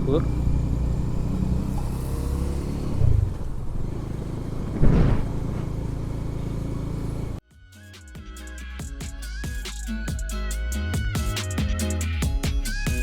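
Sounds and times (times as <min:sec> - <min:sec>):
wind and road noise: 0:00.0 - 0:07.4
motorcycle engine running: 0:03.4 - 0:07.4.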